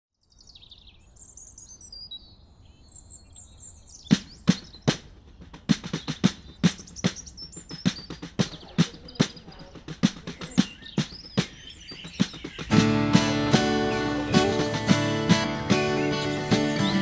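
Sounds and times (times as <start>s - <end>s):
birds chirping and whistling: 0.3s - 17.0s
music: 7.7s - 17.0s
sharp percussive strikes: 12.2s - 17.0s.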